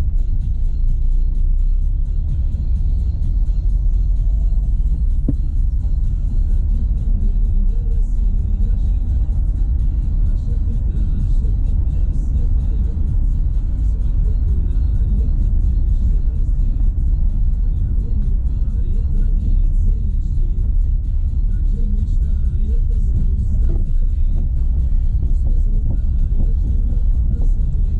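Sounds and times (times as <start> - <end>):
tyres rumbling on dirt road: 0.0 - 27.9
suspension knocks and rattles: 5.0 - 6.8.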